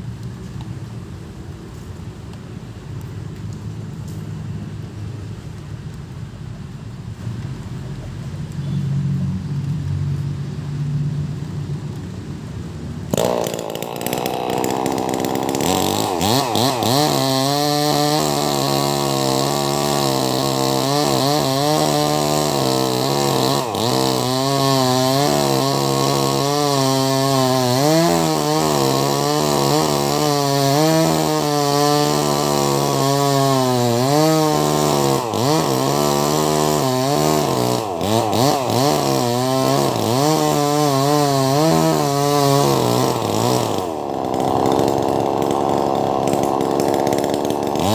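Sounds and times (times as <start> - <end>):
chainsaw cutting through log: 13.1 - 47.9.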